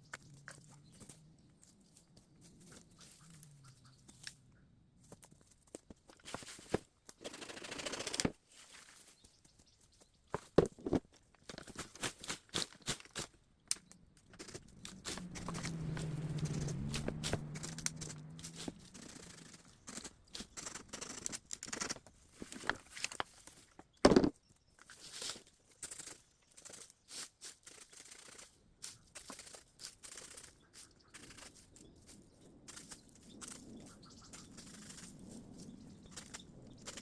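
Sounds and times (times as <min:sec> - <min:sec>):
bamboo snapping and rustling: 0:10.3 - 0:24.0, 0:24.8 - 0:37.0.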